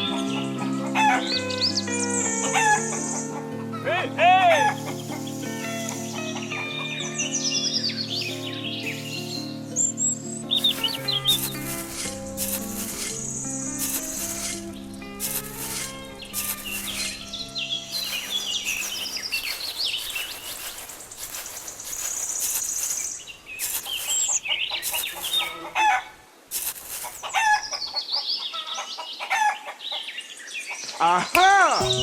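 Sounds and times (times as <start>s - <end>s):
birds chirping: 0.0s - 32.0s
held musical notes: 31.8s - 32.0s.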